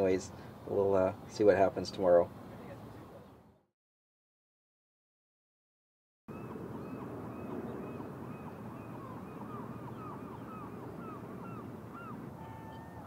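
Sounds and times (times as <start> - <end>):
water: 0.0 - 3.4, 6.3 - 13.0
wind: 0.0 - 3.7, 6.3 - 13.0.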